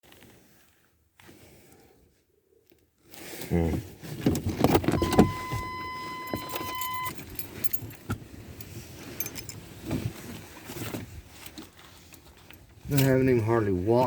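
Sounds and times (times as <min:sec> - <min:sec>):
handling clicks and rustles: 0:04.0 - 0:14.0
keys jangling: 0:04.5 - 0:08.1, 0:09.1 - 0:09.6.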